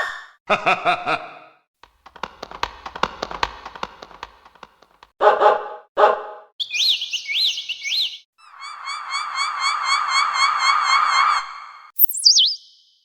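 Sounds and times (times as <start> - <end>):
high swooping chirping call: 6.6 - 13.0.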